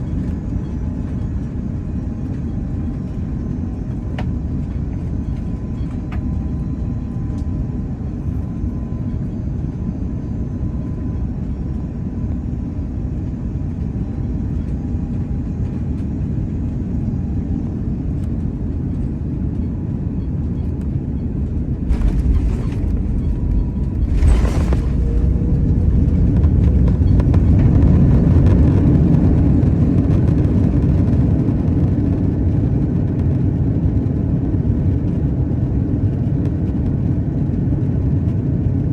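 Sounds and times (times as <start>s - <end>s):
aircraft cabin rumble: 0.0s - 32.3s
reverse thrust roar: 21.8s - 28.2s.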